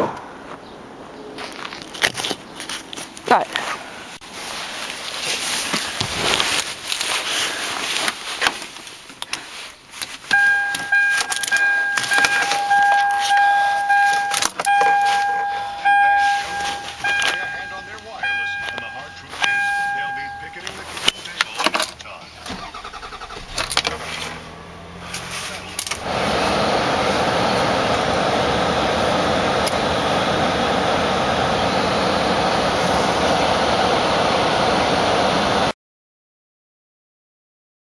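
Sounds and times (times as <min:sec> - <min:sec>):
car warning chime: 0:10.3 - 0:21.7
car engine rushing noise: 0:22.1 - 0:35.7.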